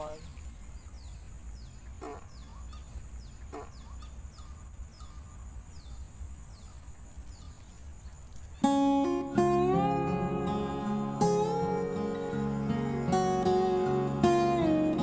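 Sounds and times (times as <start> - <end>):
bird chirping: 0.0 - 15.0
high insect drone: 0.0 - 15.0
guitar music: 8.6 - 15.0.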